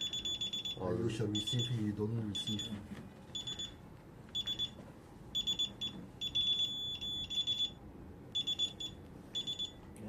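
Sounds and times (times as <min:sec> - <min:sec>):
alarm keypad buzzer beeping: 0:00.0 - 0:01.8, 0:03.4 - 0:03.8, 0:04.4 - 0:04.8, 0:05.4 - 0:09.8.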